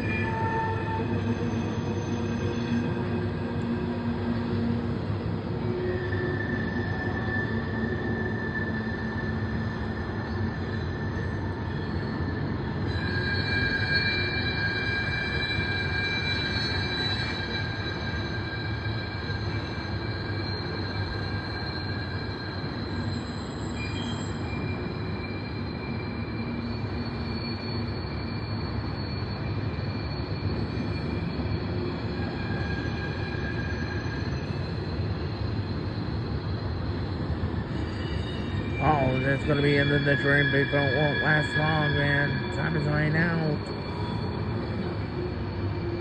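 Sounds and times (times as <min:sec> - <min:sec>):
high-pitched wheel squeal: 0:00.0 - 0:46.0
train wheels rumbling on rails: 0:00.0 - 0:46.0.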